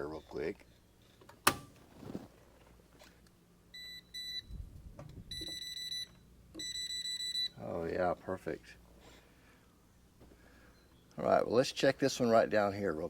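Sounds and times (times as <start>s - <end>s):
voltage tester beeping: 5.3s - 7.6s.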